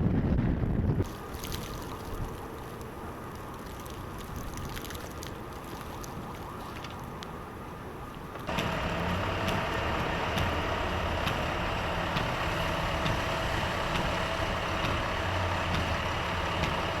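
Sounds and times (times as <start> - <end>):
vehicle engine idling: 8.5 - 17.0.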